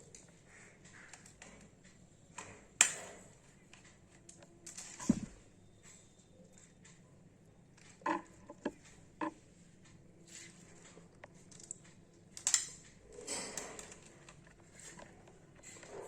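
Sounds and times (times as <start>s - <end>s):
tools clicking on wire terminals: 11.2s - 15.9s.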